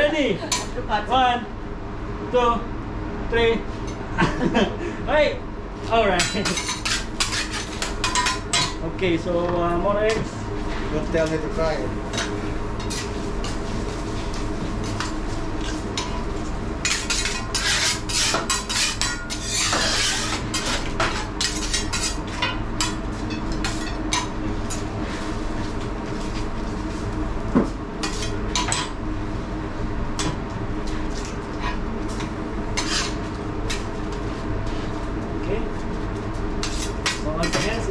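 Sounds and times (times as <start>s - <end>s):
background hum: 0.0s - 37.9s
metal spatulas scraping griddle: 6.2s - 8.8s, 16.8s - 23.0s, 31.6s - 33.3s.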